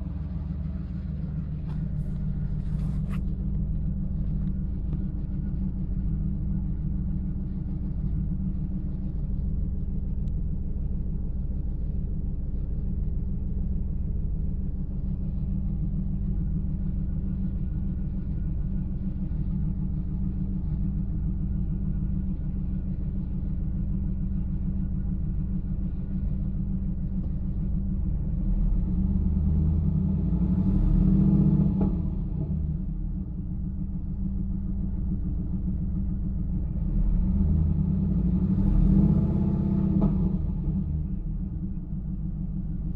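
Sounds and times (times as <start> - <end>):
car engine idling with misfire: 0.0 - 42.9
engine revving: 29.5 - 32.4, 36.8 - 40.9.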